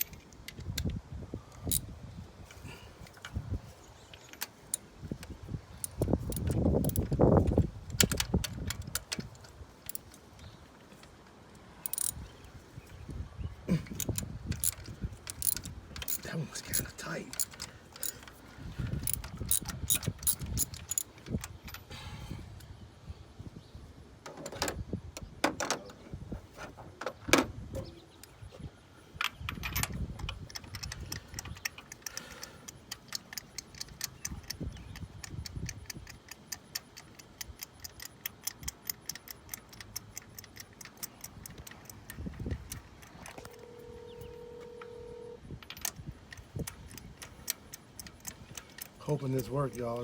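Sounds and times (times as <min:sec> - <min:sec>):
ratchet wrench clicking: 0:04.4 - 0:10.1, 0:11.8 - 0:12.2, 0:13.9 - 0:18.3, 0:19.0 - 0:21.5, 0:29.8 - 0:43.1, 0:45.7 - 0:50.0
metallic clinks: 0:11.8 - 0:12.2, 0:13.8 - 0:18.4, 0:19.0 - 0:22.0.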